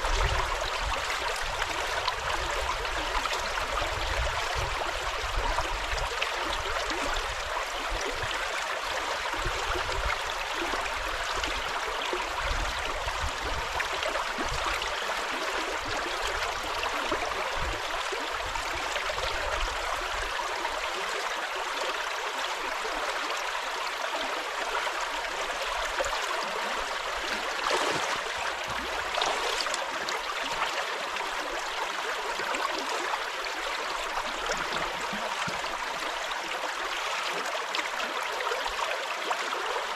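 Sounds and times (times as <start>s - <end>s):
river water rushing: 26.0s - 31.2s.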